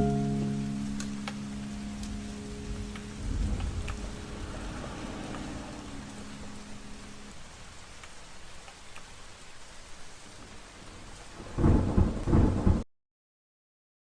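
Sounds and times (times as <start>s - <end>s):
steady rain falling: 0.0s - 12.9s
loud thunder clap: 3.2s - 5.7s, 11.4s - 12.9s.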